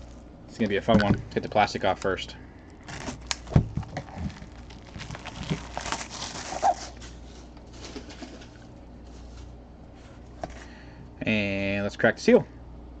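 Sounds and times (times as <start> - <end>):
plastic shrink wrap tearing: 2.8 - 8.6.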